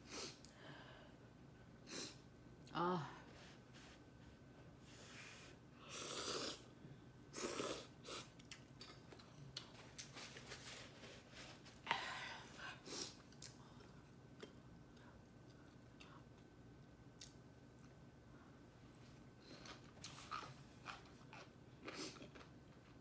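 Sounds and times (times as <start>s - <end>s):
slurping noodles: 5.0s - 6.7s, 7.3s - 8.4s
quiet chewing: 7.5s - 10.9s, 13.0s - 23.0s.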